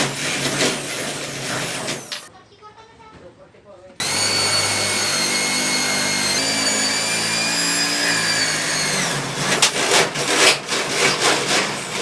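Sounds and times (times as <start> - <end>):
electric drill whining through wood: 4.0 - 12.0
rough scraping of wood: 4.0 - 12.0.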